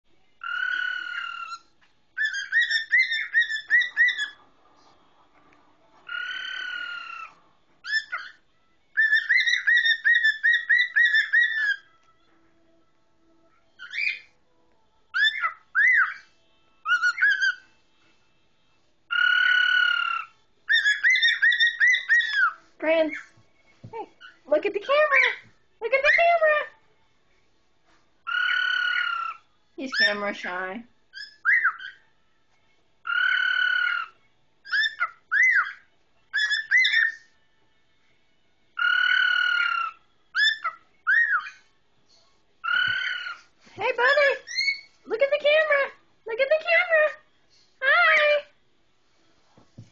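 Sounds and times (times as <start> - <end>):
cockatiel whistling: 0.4 - 4.4, 6.1 - 11.9, 13.8 - 14.3, 15.1 - 16.2, 16.8 - 17.7, 19.1 - 22.6, 31.1 - 32.0, 33.1 - 37.3, 38.8 - 41.6, 42.6 - 43.4, 44.1 - 45.0.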